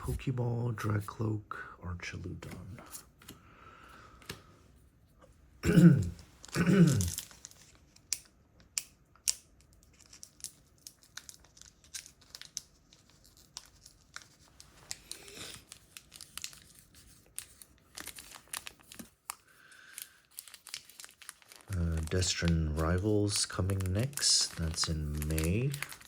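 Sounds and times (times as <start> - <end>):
card packaging crinkling and tearing: 6.0 - 26.0.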